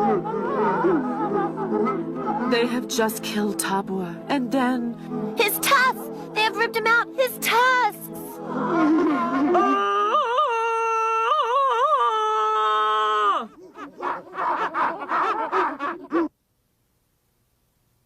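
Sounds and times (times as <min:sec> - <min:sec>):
cartoon character wailing cry: 0:08.7 - 0:13.5.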